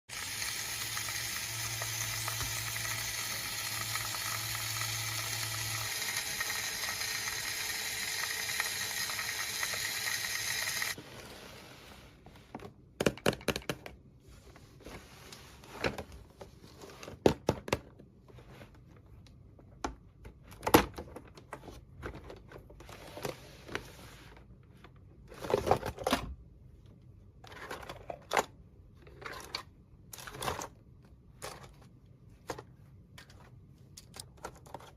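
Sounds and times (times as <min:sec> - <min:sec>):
plastic toy pieces clicking: 0:00.2 - 0:11.0.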